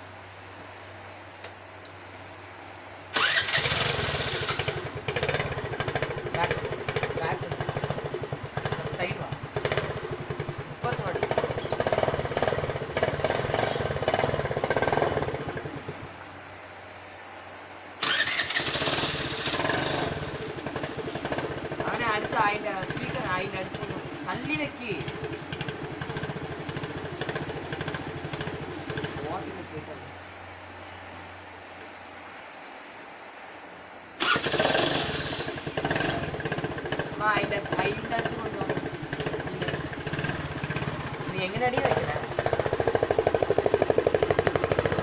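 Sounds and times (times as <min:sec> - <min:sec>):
steady high whine: 0:00.0 - 0:45.0
motorcycle engine running: 0:03.2 - 0:16.0, 0:18.0 - 0:29.6, 0:34.2 - 0:45.0.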